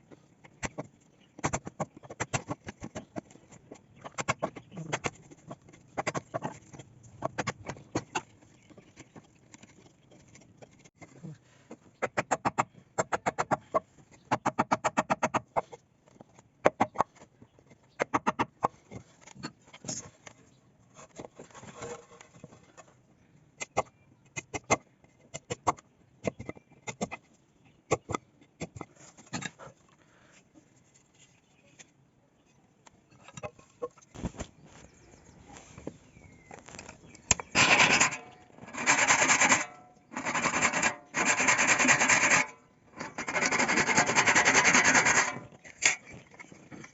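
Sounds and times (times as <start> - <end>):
rasping strokes on wood: 37.6 - 45.5.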